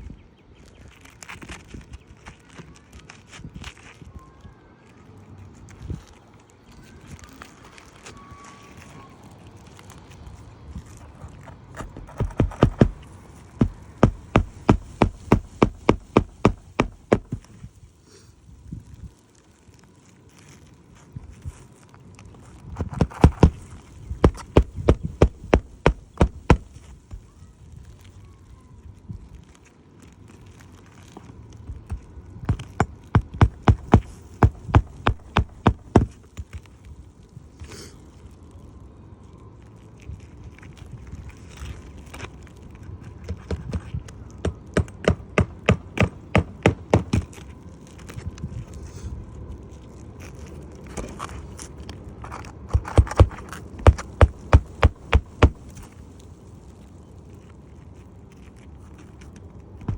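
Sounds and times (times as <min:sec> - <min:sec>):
hammer strikes on shingle roof: 0:11.8 - 0:17.6, 0:22.8 - 0:27.3, 0:31.7 - 0:36.5, 0:44.4 - 0:47.4, 0:52.7 - 0:55.8.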